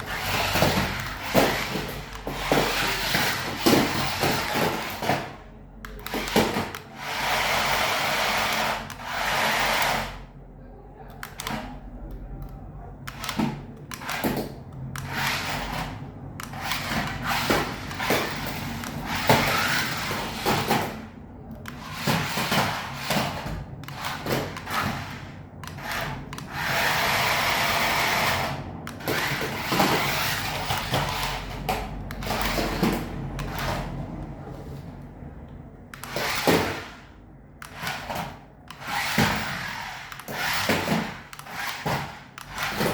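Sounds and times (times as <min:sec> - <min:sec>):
toy car electric motor whirring: 0:00.0 - 0:10.2, 0:13.1 - 0:33.9, 0:35.9 - 0:42.9.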